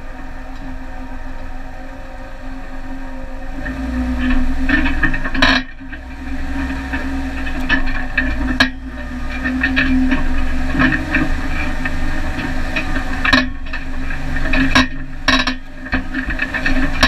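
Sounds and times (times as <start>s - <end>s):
vehicle engine and road drone: 0.0s - 17.0s
rattling and knocking of vehicle body: 3.6s - 17.0s.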